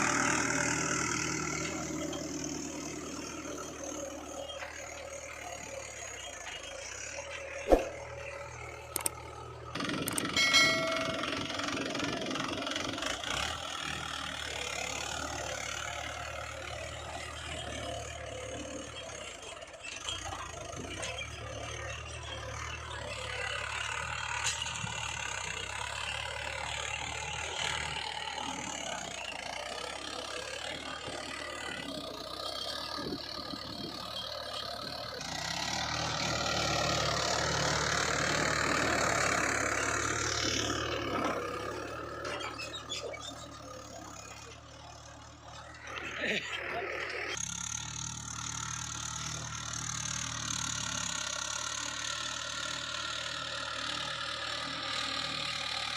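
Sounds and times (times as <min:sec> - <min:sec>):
tractor diesel engine running: 0:00.0 - 0:55.9
mechanical clatter and rattle: 0:08.9 - 0:11.3.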